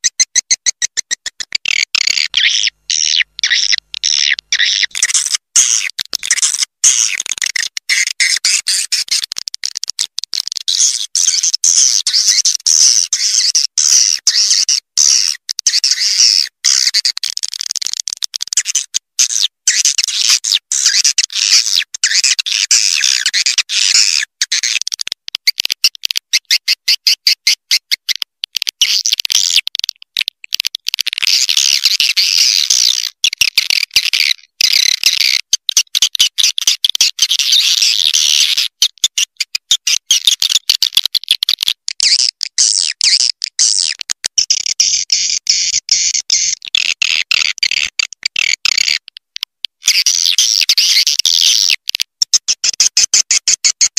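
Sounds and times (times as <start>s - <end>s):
swiftlets twittering chirps and trills: 0.0s - 9.2s.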